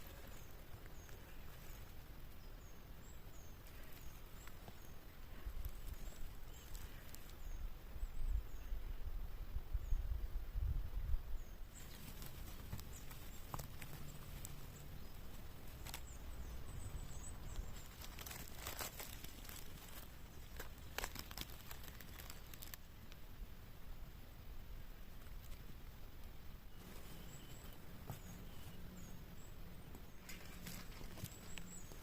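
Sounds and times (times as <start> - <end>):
leaf litter rustling and crackling: 0.0 - 2.2, 3.3 - 7.6, 11.7 - 23.4, 25.0 - 32.0
twigs snapping: 5.5 - 7.5, 11.7 - 23.2, 29.9 - 32.0.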